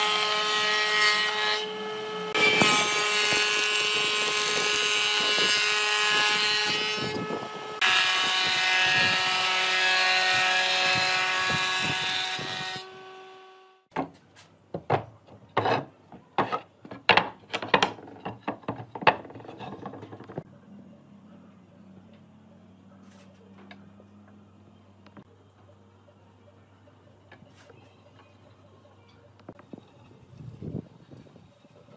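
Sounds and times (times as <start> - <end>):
power tool whining on wood: 0.0 - 13.8.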